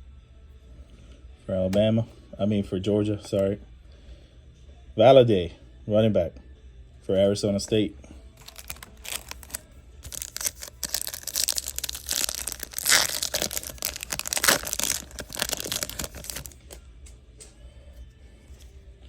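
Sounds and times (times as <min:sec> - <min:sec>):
cards crinkling and rustling: 0:08.4 - 0:16.8.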